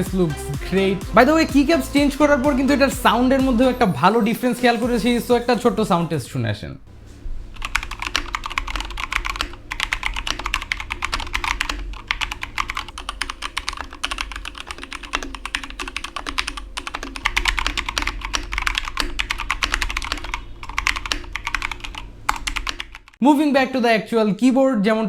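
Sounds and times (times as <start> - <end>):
mechanical keyboard typing: 7.6 - 23.2.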